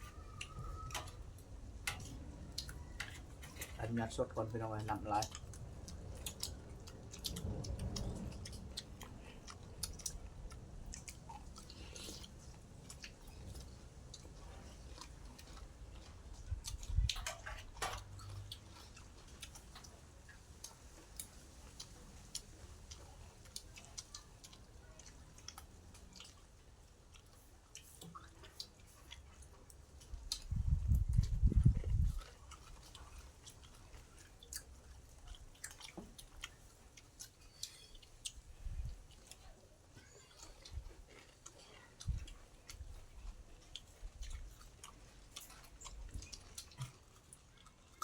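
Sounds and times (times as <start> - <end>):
person chewing food: 0.0 - 48.0
wet mouth clicks and smacks: 4.8 - 14.3, 29.7 - 33.6.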